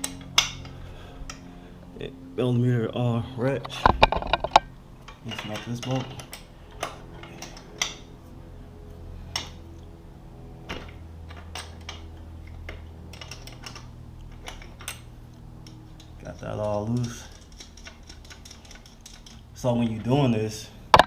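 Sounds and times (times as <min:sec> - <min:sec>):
steady low hum: 0:00.0 - 0:21.0
wrench clicking on bolt: 0:15.7 - 0:19.4.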